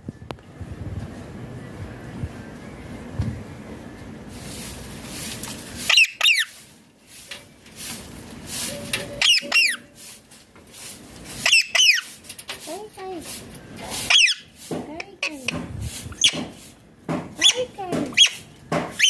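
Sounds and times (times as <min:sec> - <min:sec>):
parrot screeching: 0:05.9 - 0:06.5, 0:09.2 - 0:09.9, 0:11.4 - 0:12.1, 0:14.0 - 0:14.5.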